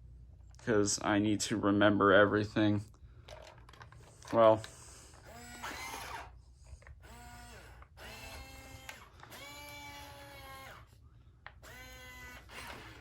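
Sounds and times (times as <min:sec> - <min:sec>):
robot gear motors whirring: 0:05.2 - 0:06.3, 0:07.0 - 0:10.9, 0:11.6 - 0:13.0.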